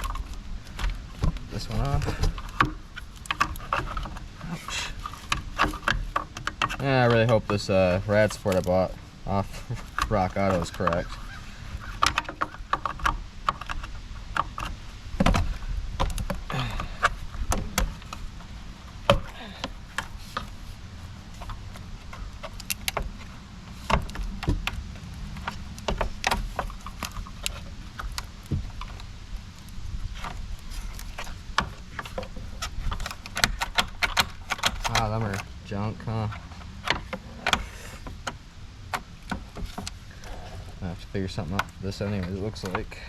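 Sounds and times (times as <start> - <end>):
low steady hum: 0.0 - 43.0
tools clicking and rattling: 30.2 - 43.0.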